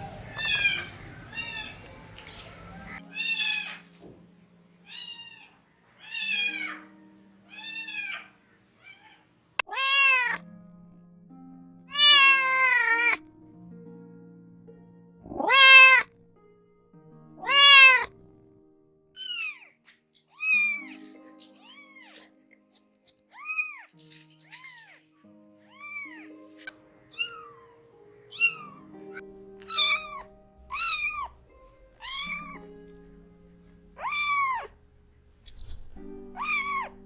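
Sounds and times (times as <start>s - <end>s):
cat meowing: 0.0s - 3.9s, 4.9s - 10.4s, 11.9s - 13.2s, 15.3s - 16.1s, 17.4s - 18.1s, 20.4s - 22.2s, 25.7s - 26.3s, 27.1s - 33.4s, 34.0s - 34.8s, 35.5s - 37.0s
soft background music: 0.0s - 37.0s.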